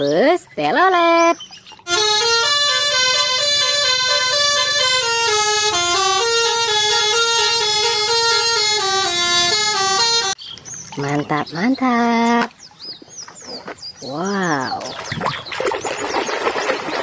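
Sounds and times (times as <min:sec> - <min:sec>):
bus horn playing a tune: 0:01.9 - 0:10.4.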